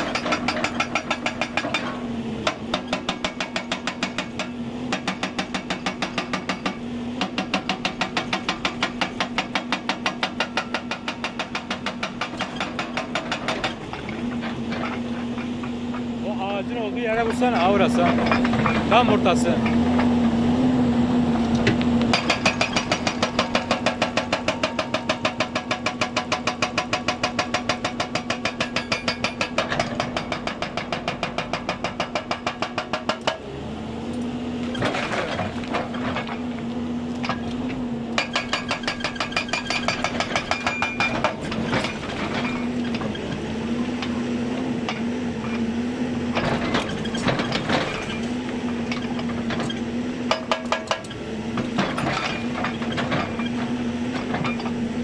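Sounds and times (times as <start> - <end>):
hydraulic breaker hammering: 0.0 - 16.1, 16.8 - 20.2, 21.7 - 33.5, 38.2 - 45.6, 46.2 - 54.8
diesel engine droning: 13.7 - 25.5.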